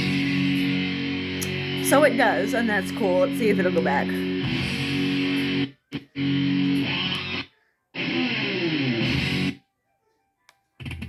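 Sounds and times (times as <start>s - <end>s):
rock music with guitar: 0.0s - 9.6s, 10.8s - 11.0s.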